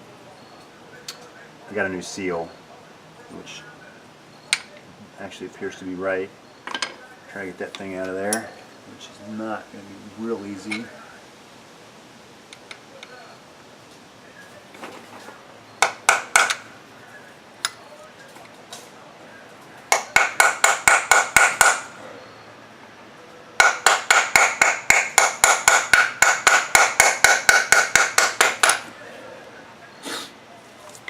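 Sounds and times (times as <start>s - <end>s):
hammer striking metal: 15.8s - 16.6s, 19.9s - 21.9s, 23.6s - 28.9s.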